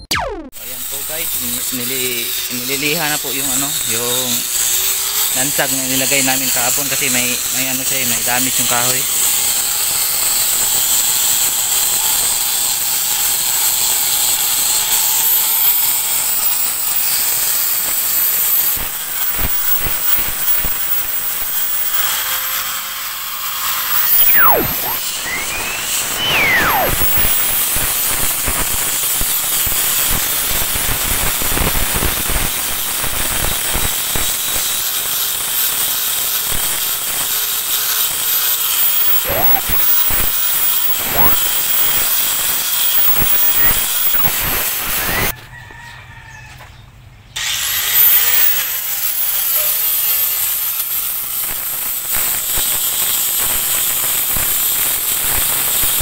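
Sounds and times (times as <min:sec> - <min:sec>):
angle grinder sanding wood: 0:00.7 - 0:45.3, 0:47.4 - 0:56.0.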